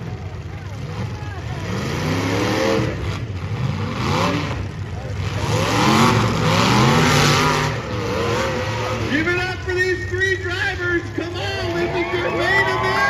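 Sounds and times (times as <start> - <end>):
car engines revving hard: 0.0 - 9.8.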